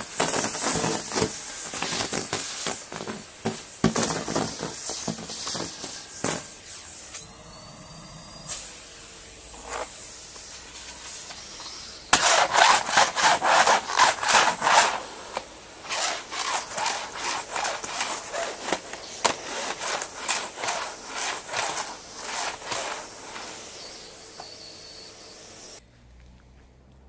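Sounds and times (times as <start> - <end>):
vacuum cleaner sucking up leaves: 0.0 - 25.8
scraping and rustling of dry leaves: 12.1 - 15.1, 15.8 - 24.6.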